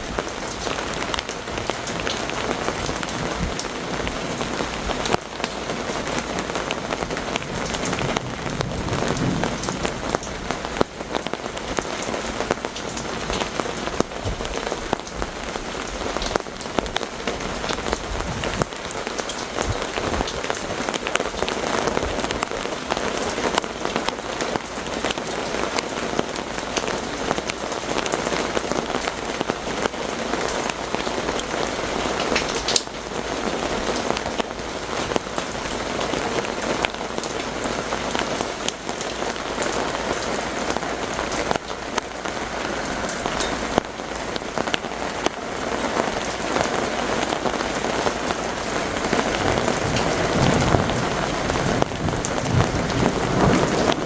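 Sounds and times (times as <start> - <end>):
low rumble of thunder: 0.0 - 5.2, 6.7 - 11.8, 17.4 - 18.9, 48.7 - 54.0
heavy rain falling: 0.0 - 54.0
raindrops ticking on surfaces: 0.0 - 54.0.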